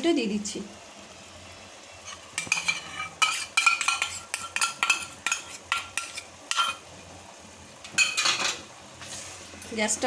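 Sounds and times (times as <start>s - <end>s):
metal spoon clinking on pot: 2.4s - 6.8s, 8.0s - 8.6s.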